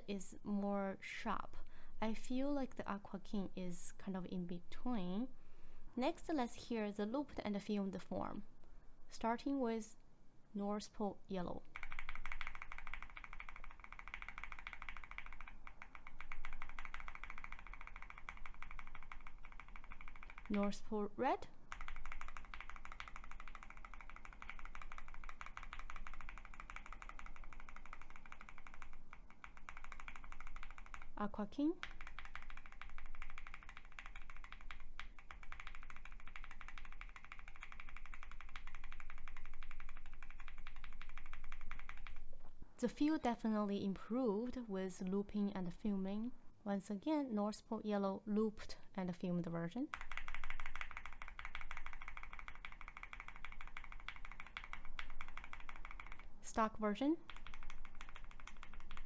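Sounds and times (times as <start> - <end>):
mechanical keyboard typing: 11.6 - 42.4, 49.7 - 59.0.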